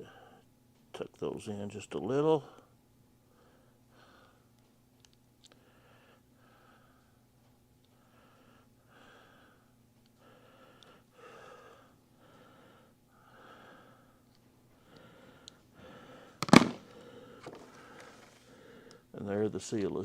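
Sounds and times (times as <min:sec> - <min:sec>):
person breathing in soft puffs: 0:05.5 - 0:07.2, 0:07.9 - 0:19.1
hand crimper snapping shut: 0:16.4 - 0:16.8.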